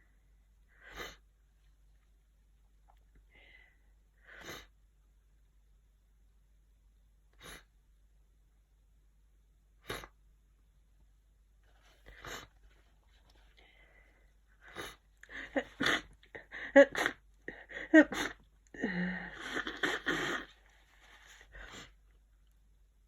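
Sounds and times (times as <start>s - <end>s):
person sneezing: 15.6s - 16.1s, 16.8s - 17.2s, 17.9s - 18.4s, 19.3s - 20.5s.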